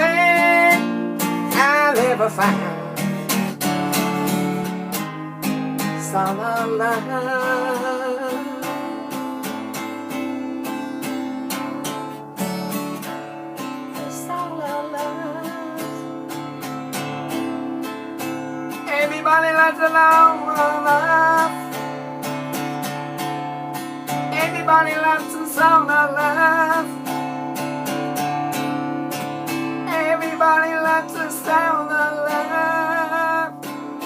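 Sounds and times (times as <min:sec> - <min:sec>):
person singing: 0:00.0 - 0:04.5, 0:05.8 - 0:09.8, 0:13.9 - 0:16.4, 0:18.7 - 0:22.0, 0:24.1 - 0:27.1, 0:29.8 - 0:34.0
strummed acoustic guitar: 0:00.0 - 0:34.0.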